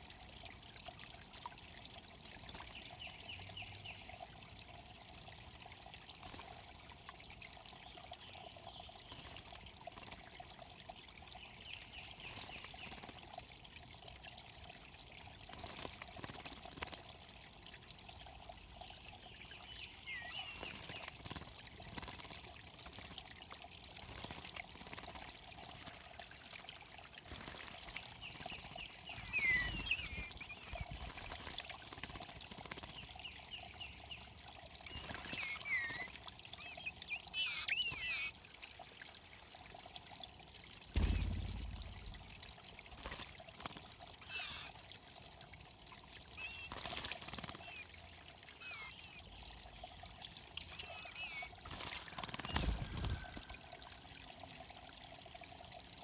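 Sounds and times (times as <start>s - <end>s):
water trickling: 0.0s - 56.0s
bird chirps: 19.7s - 20.9s, 28.2s - 31.0s, 34.9s - 38.3s, 44.3s - 44.7s, 46.4s - 46.8s, 48.6s - 49.3s, 50.8s - 51.5s.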